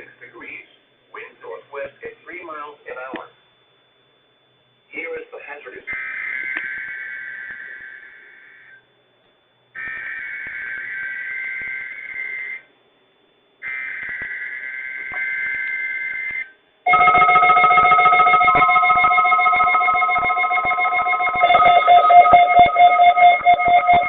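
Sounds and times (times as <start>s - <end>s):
screechy two-tone digital warble: 5.9s - 8.9s, 13.6s - 24.0s
warning alarm with pulsing rattle: 5.9s - 9.0s, 9.6s - 12.8s, 13.6s - 24.0s.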